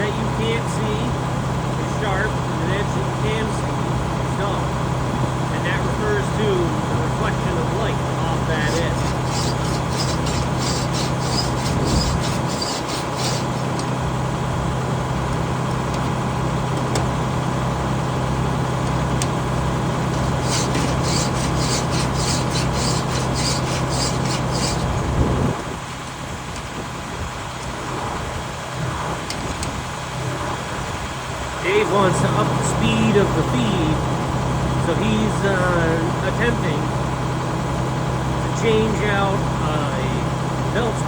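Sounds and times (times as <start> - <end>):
steady low hum: 0.0 - 41.0
file rasping on saw teeth: 8.6 - 13.9, 20.1 - 25.0.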